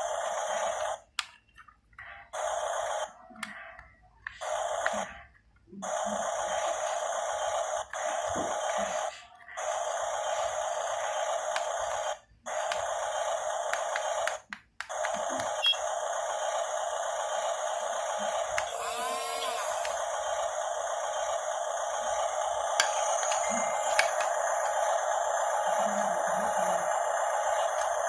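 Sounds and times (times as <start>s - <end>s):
electric motors buzzing whine: 15.0s - 28.0s.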